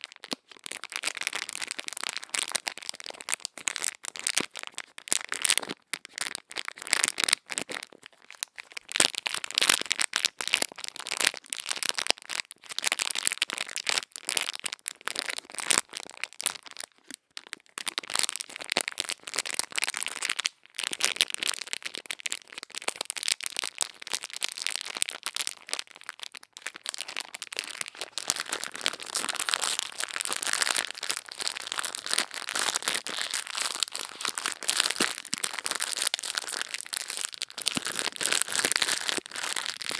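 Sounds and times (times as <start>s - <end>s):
crackling and scratching on microphone: 27.5s - 39.9s.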